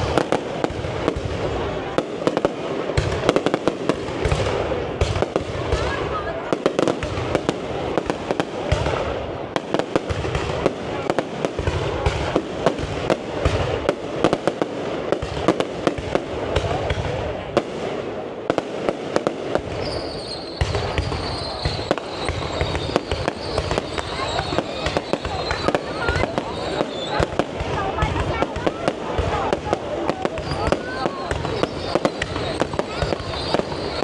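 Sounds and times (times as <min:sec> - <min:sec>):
fireworks bangs and crackles: 0:00.0 - 0:34.0
high falling firework whistle: 0:19.6 - 0:27.3, 0:30.3 - 0:34.0.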